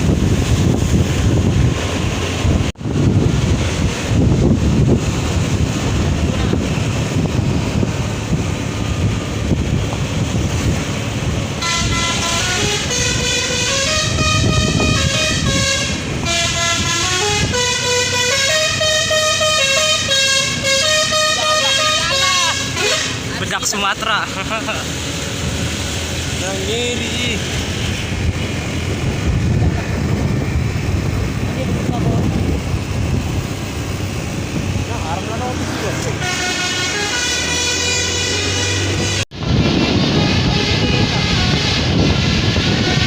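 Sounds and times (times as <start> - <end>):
wind buffeting microphone: 0.0 - 17.9, 25.0 - 36.3, 38.7 - 43.0
musical air horn playing a tune: 11.6 - 23.2, 36.2 - 39.2, 40.0 - 43.0.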